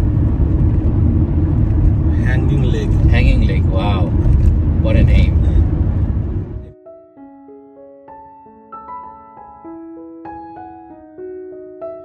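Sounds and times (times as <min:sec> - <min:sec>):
soft piano melody: 0:06.6 - 0:12.0.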